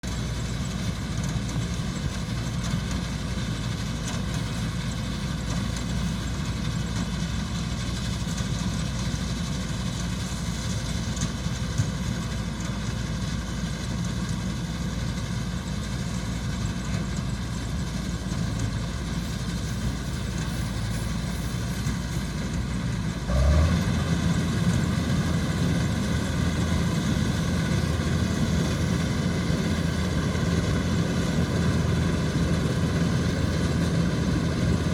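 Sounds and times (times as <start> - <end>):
combine harvester diesel engine: 0.0 - 34.9.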